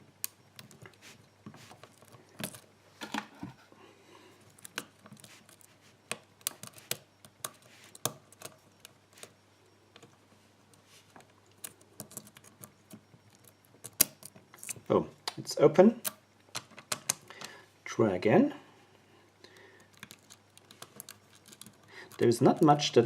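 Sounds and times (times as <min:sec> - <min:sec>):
lock pick metallic clicks: 0:19.9 - 0:22.2.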